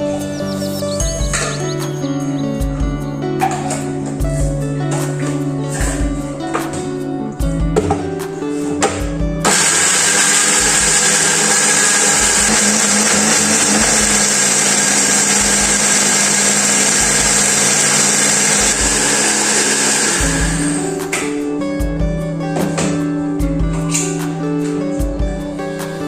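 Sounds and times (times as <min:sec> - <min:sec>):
background music with beat: 0:00.0 - 0:26.0
electric blender running: 0:09.4 - 0:21.1.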